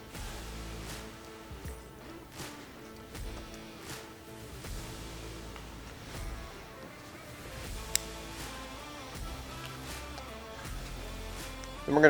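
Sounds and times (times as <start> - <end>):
background music with held notes: 0.0 - 12.0.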